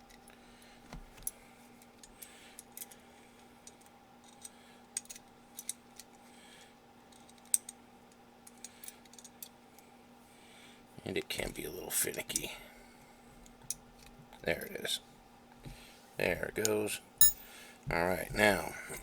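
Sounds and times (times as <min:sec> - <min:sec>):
faint steady hum: 0:00.0 - 0:19.0
metal parts clicking and scraping: 0:17.2 - 0:17.5.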